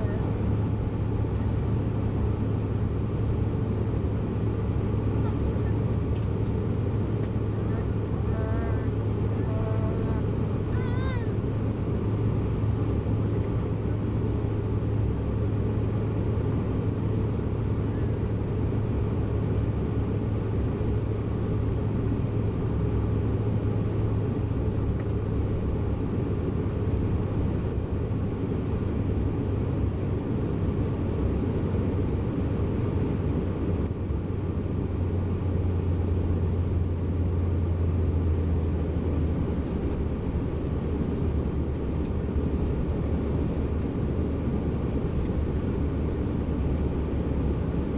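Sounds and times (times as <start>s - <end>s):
jet engines droning: 0.0s - 47.9s
low hum: 0.0s - 47.9s.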